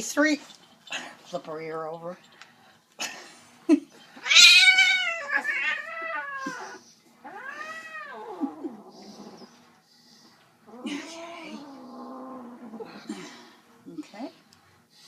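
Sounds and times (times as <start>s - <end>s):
cat yowling: 4.2s - 9.4s, 10.7s - 12.9s.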